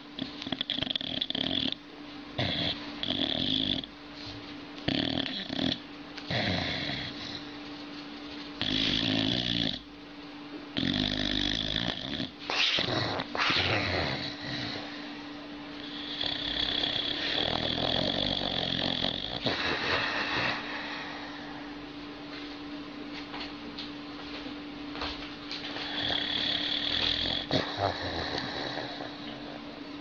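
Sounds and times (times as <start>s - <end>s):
dog snoring: 0.0s - 1.8s, 2.4s - 3.9s, 4.8s - 7.6s, 8.6s - 9.9s, 10.7s - 21.8s, 25.6s - 29.8s.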